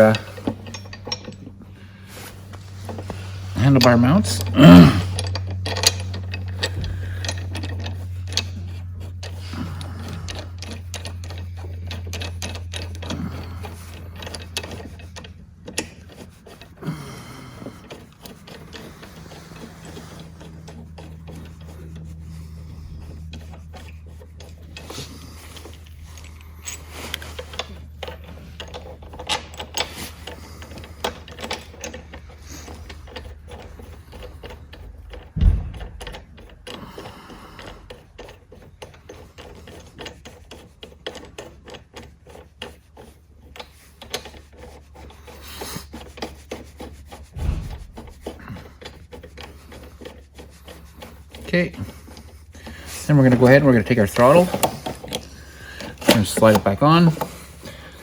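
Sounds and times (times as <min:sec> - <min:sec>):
low hum: 0:00.0 - 0:29.2, 0:32.2 - 0:37.9
hand tools clicking and knocking: 0:00.0 - 0:58.0.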